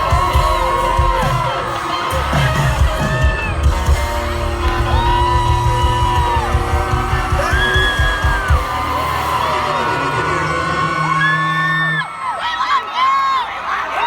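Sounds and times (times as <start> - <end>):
live country band: 0.0 - 12.1
fans whooping and yelling: 0.0 - 14.0.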